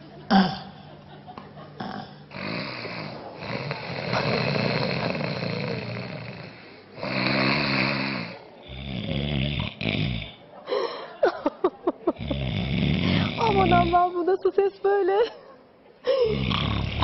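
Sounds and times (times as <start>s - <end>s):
man snoring: 1.8s - 10.4s, 12.2s - 14.0s, 16.2s - 17.0s.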